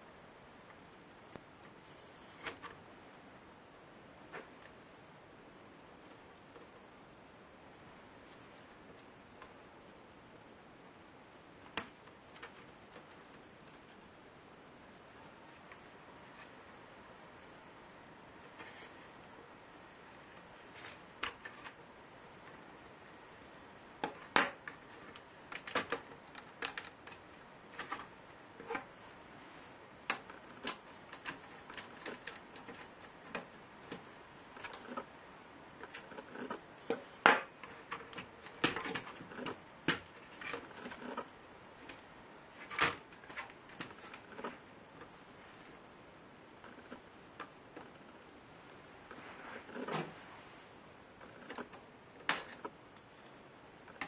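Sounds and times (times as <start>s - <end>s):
plastic parts and tools clicking: 30.1s - 34.0s.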